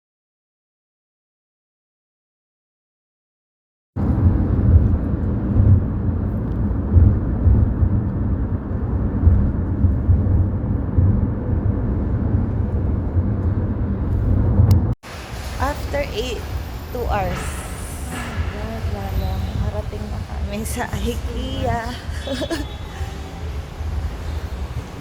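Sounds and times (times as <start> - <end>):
vehicle engine and road noise: 4.0 - 25.0.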